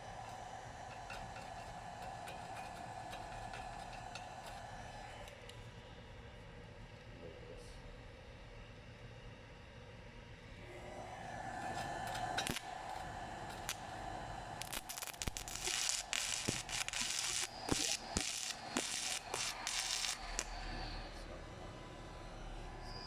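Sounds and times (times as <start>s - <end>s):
welding machine hum: 11.6s - 21.6s
welding arc crackling and hissing: 11.7s - 21.4s.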